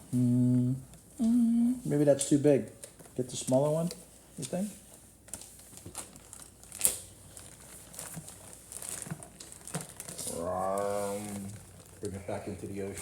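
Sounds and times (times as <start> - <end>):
crinkling handling noise: 2.2 - 13.0.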